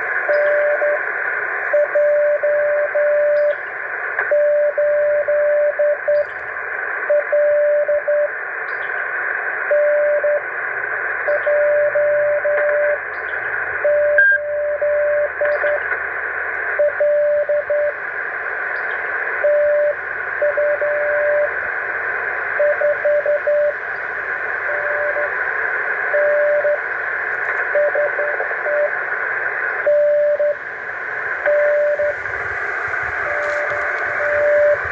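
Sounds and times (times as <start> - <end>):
morse code tone: 0.0 - 1.0, 13.9 - 15.8, 16.8 - 18.0, 22.6 - 23.8, 24.7 - 25.3, 29.8 - 34.9
radio receiver hiss: 0.0 - 34.9.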